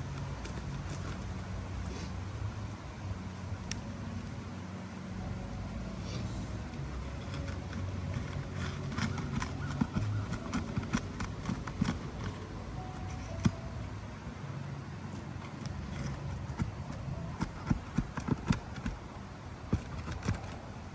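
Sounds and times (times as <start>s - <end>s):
taps and knocks on roof shingles: 7.2s - 13.7s, 15.5s - 19.1s, 19.7s - 20.7s.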